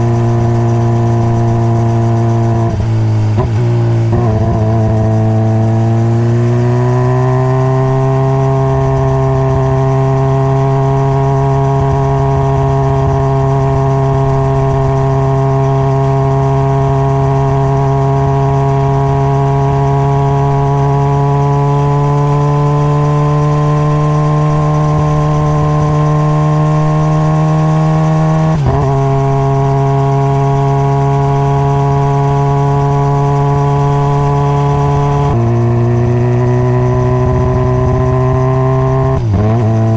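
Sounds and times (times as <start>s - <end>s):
motorcycle engine cruising: 0.0s - 39.9s.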